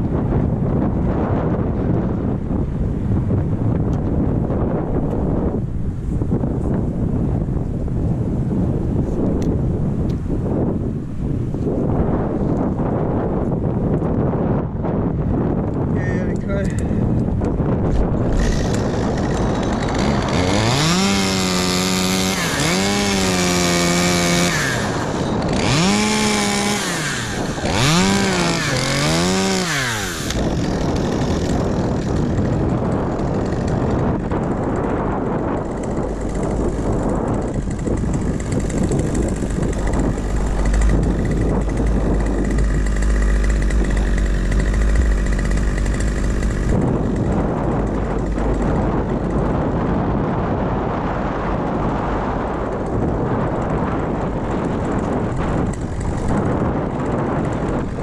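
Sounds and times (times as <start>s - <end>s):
chainsaw revving: 17.9s - 50.2s, 52.6s - 58.0s
steady rushing noise: 35.6s - 50.6s
deep low rumble: 36.2s - 50.9s.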